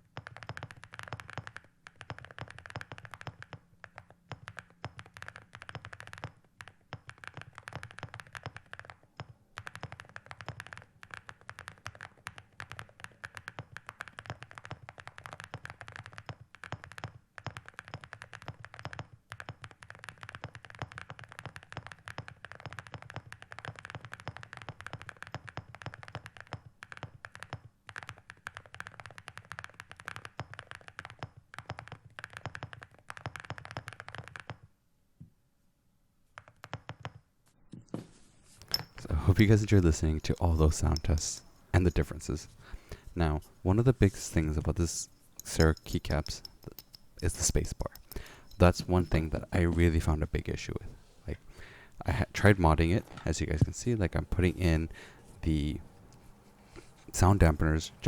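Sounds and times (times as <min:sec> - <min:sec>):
typing on mechanical keyboard: 0:00.0 - 0:34.7, 0:36.4 - 0:37.2.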